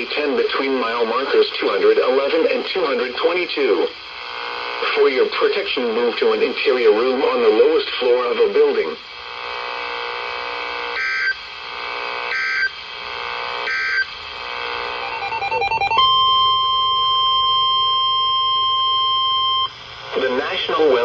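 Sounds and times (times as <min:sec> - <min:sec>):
steady warning alarm tone: 0:10.8 - 0:11.4, 0:12.2 - 0:19.8
rasping digital code bursts: 0:12.0 - 0:16.0.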